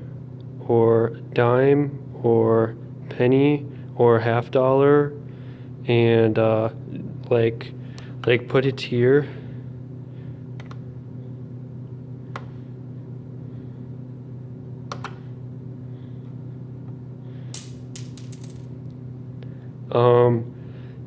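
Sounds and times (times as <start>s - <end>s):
coin mechanism clicks: 17.6s - 18.7s
coins jingling clatter: 17.6s - 18.7s.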